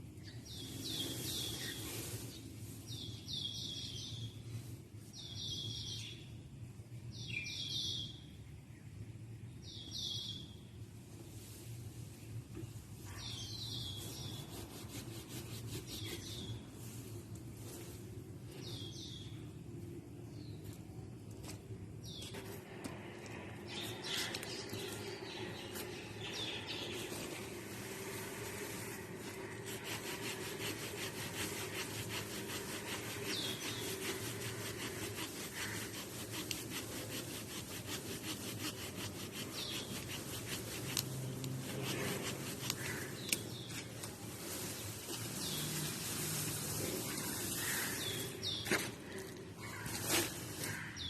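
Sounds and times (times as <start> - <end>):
rasping strokes clearing grass: 0.4 - 3.8, 13.2 - 19.3, 22.1 - 50.9
birds chirping: 22.0 - 36.6, 41.7 - 51.0.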